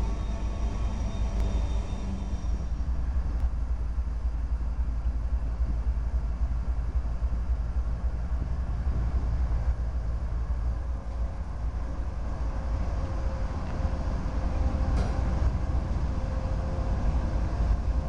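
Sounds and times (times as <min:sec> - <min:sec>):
freight train rumbling past: 0:00.0 - 0:18.0.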